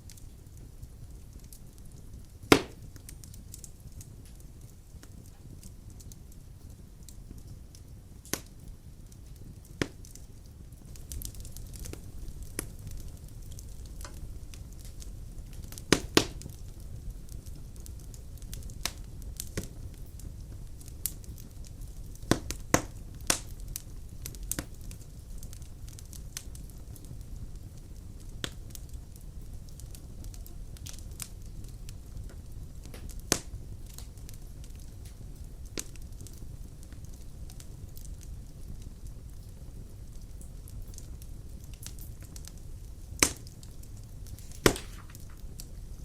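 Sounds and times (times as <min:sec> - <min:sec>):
fire pops: 0:00.0 - 0:46.0
wood fire crackling: 0:00.0 - 0:46.0.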